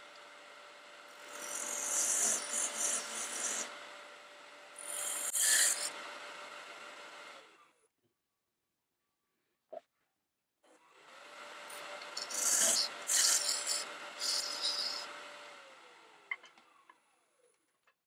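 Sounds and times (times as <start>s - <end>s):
wood lathe running: 0.0s - 7.6s, 11.0s - 16.3s.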